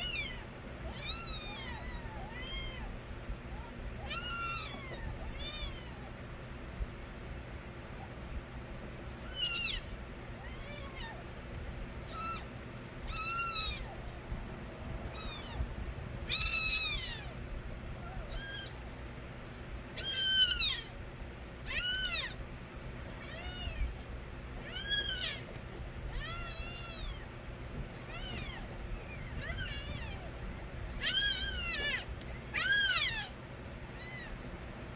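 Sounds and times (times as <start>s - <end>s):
kittens meowing: 0.0s - 6.2s, 9.2s - 11.3s, 12.0s - 14.4s, 15.1s - 19.0s, 20.0s - 21.0s, 21.6s - 22.4s, 23.1s - 24.0s, 24.6s - 34.5s.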